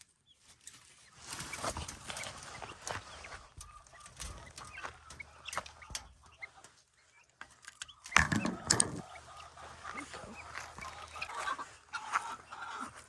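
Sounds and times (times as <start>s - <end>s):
chickens clucking: 0.3s - 13.0s.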